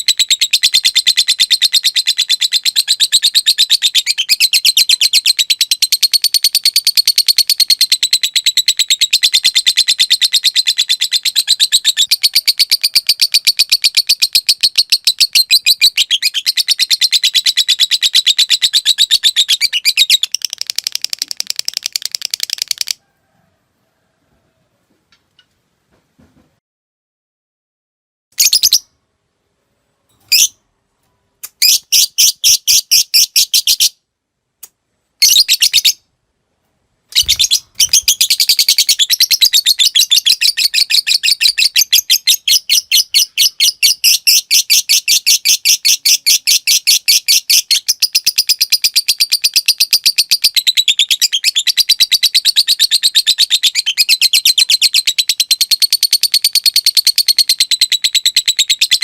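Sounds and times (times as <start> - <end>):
lovebird chattering: 0.0 - 23.0, 37.1 - 59.0.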